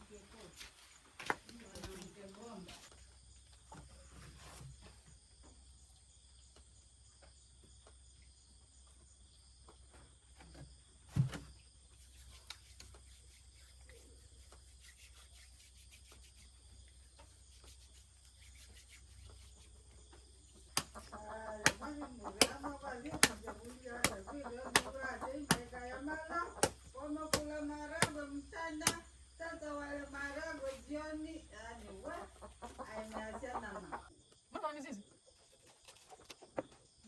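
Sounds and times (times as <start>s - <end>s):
insect-like chirring: 11.5s - 37.0s
person speaking: 21.0s - 32.2s
sharp knocks: 21.6s - 25.7s, 26.6s - 28.2s.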